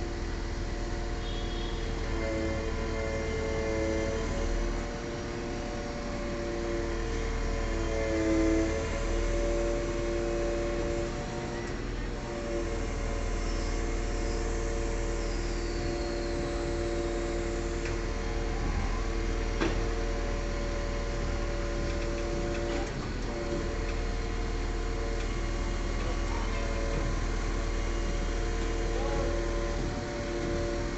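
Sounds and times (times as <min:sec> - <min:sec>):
crane engine and hydraulic whine: 0:00.0 - 0:30.9.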